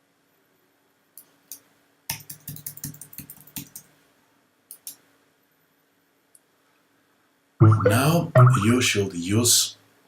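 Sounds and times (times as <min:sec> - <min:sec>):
typing on computer keyboard: 0:02.1 - 0:03.9.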